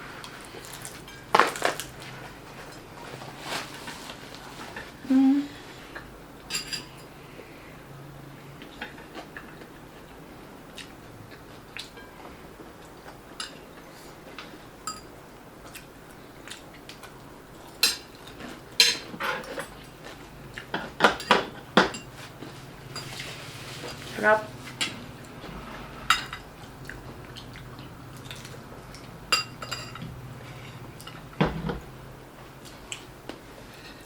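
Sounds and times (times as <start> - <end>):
utensils clinking against dishes: 6.5 - 7.1, 14.8 - 15.1, 17.8 - 19.9, 20.8 - 22.3, 29.3 - 30.1.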